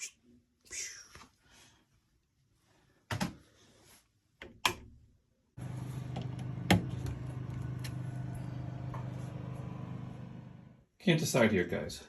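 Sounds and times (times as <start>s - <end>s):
steady low hum: 5.6s - 10.8s.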